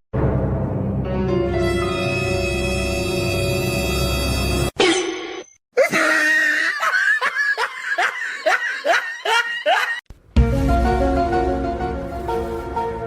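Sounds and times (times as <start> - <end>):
laughter bursts: 5.8 - 10.0.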